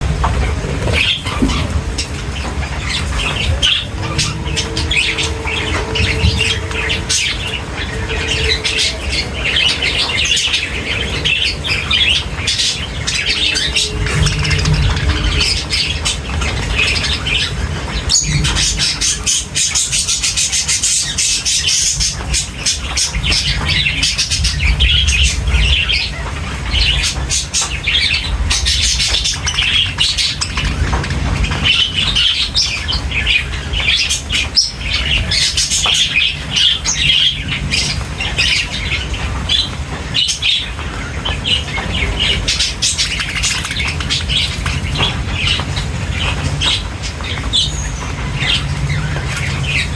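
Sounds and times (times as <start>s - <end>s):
steady low hum: 0.0s - 20.2s
budgerigars chattering: 0.0s - 49.9s.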